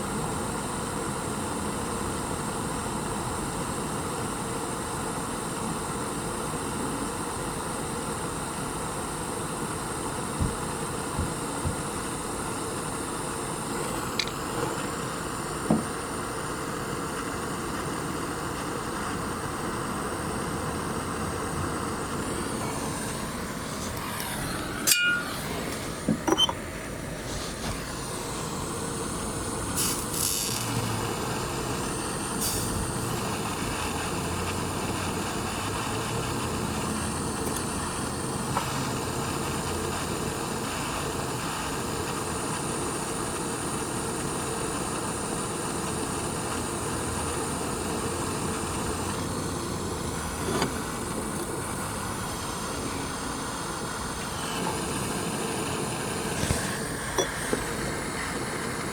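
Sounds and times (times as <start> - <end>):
faint high whine: 0.0 - 38.1
steady hiss: 9.5 - 58.9.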